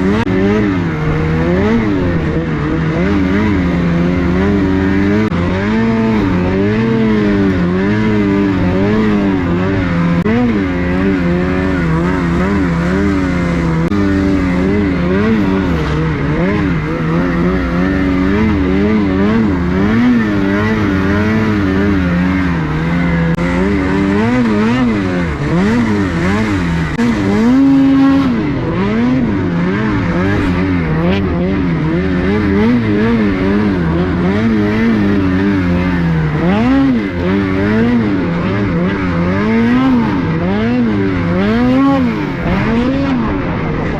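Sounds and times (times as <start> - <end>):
snowmobile engine running: 0.0 - 43.9.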